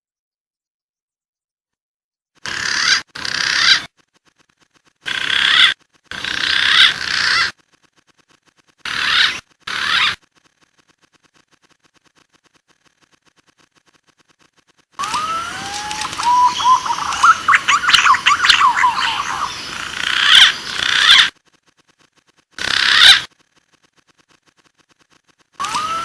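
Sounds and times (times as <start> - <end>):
pigeon whistles and trills: 15.0 - 19.6.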